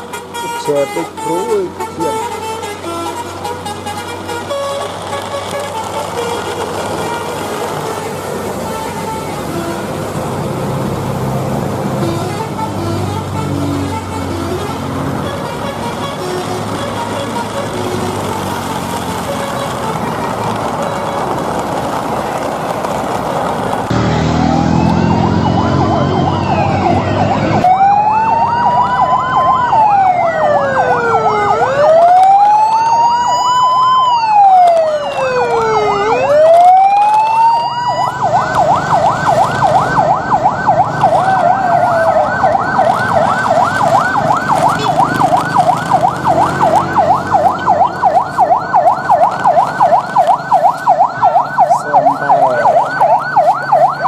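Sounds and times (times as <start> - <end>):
electronic siren wailing: 23.9 - 54.0
siren fast yelp: 24.4 - 54.0.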